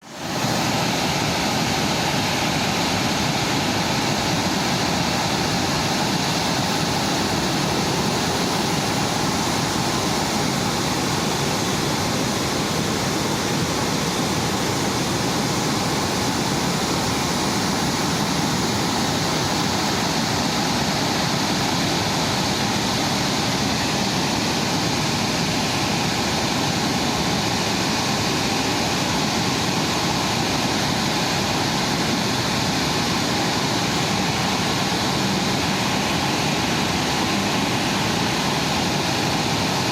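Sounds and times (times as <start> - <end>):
river rushing: 0.0 - 39.9.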